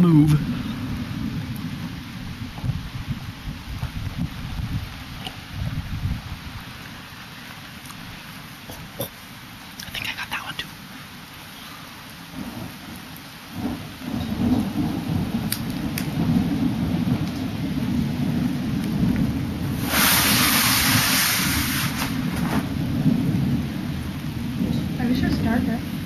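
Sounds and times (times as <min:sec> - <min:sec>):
thunder rumbling: 0:00.0 - 0:07.0, 0:12.3 - 0:26.0
steady rain: 0:00.0 - 0:26.0
hiss: 0:19.7 - 0:22.7.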